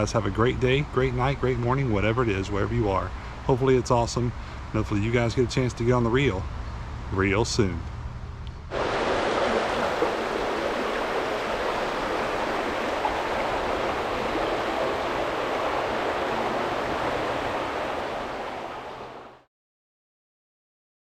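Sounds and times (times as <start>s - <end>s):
creek water rushing: 8.7s - 19.5s.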